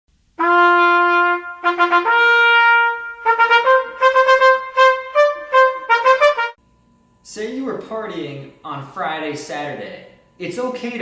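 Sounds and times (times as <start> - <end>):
solo brass melody: 0.4 - 6.6.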